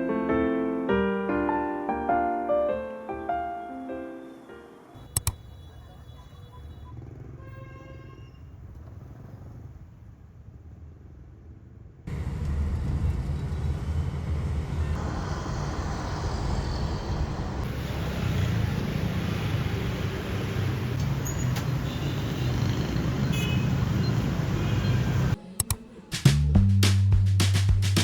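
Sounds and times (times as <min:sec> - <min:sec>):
road traffic rumble: 0:05.0 - 0:25.4.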